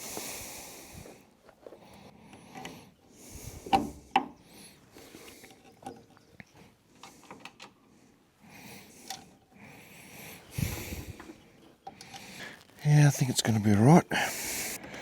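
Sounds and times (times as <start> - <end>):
heavy breathing: 8.4 - 12.7, 14.1 - 15.0.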